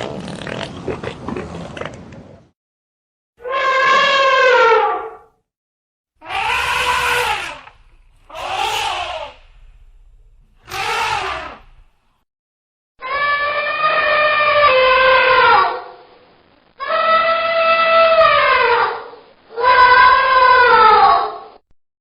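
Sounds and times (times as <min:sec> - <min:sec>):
elephant trumpeting: 0:03.4 - 0:05.0, 0:06.2 - 0:12.1.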